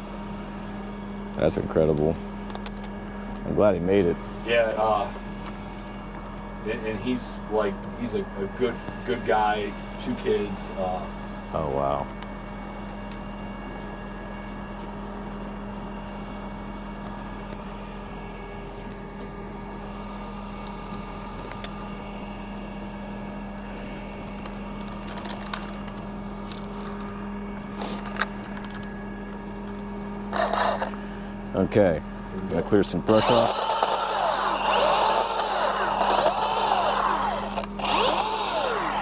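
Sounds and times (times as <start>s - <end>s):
crane engine humming: 30.9s - 39.0s.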